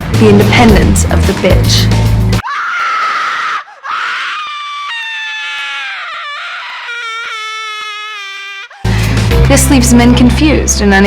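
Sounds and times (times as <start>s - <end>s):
person screaming: 2.4s - 8.9s.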